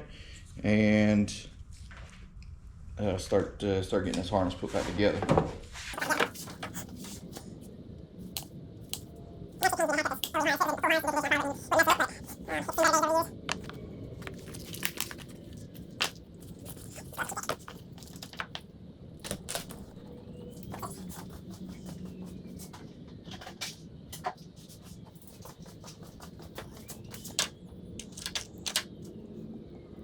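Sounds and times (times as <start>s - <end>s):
scraping and rustling of wires: 5.8s - 29.2s
tools clicking on wires: 27.1s - 29.0s.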